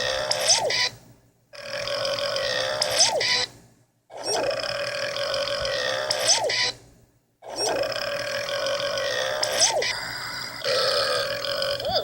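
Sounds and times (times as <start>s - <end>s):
long drawn-out burps: 4.4s - 6.1s, 7.7s - 12.0s.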